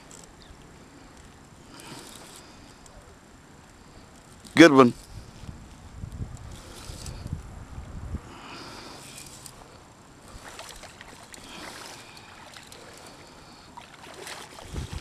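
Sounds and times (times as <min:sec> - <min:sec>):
low wind rumble: 0:00.0 - 0:15.0
water sloshing and trickling: 0:10.2 - 0:15.0.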